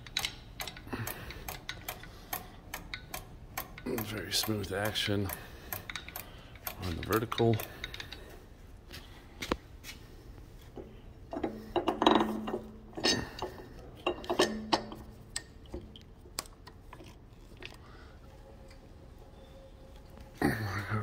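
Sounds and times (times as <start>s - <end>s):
metallic clicks of handwheels: 0.0s - 8.2s.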